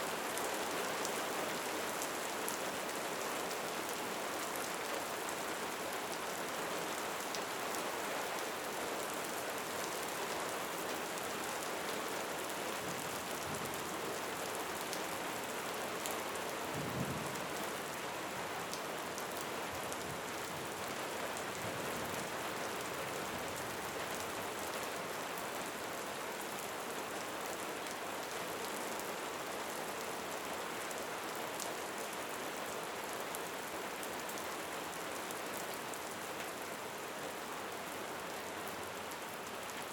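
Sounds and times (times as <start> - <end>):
steady rain falling into water: 0.0 - 39.9.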